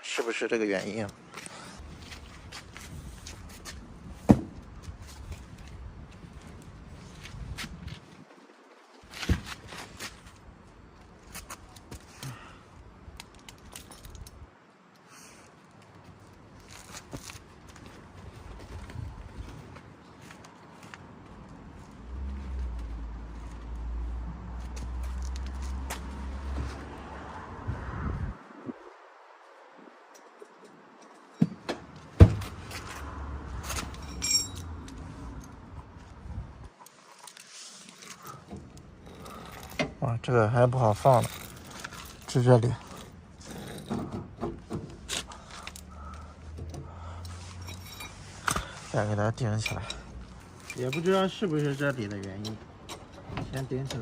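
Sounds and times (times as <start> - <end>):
clicks and knocks of handling gear: 13.1 - 21.3
metallic ring: 33.9 - 34.7, 47.6 - 48.4.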